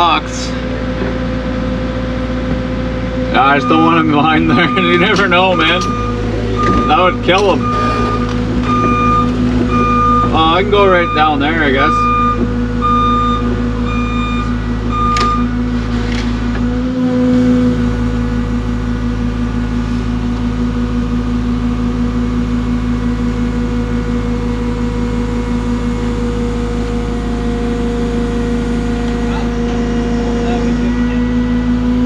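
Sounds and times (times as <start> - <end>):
excavator diesel engine running: 0.0 - 32.0
high alarm beeps: 3.5 - 15.5.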